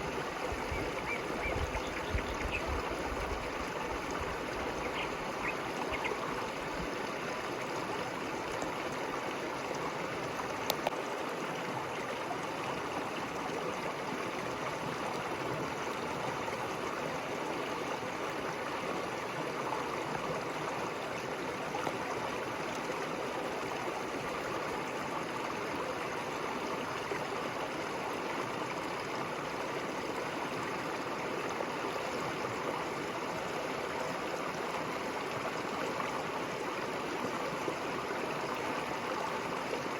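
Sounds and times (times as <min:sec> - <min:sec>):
river water flowing: 0:00.0 - 0:39.9
brief click: 0:10.7 - 0:11.0.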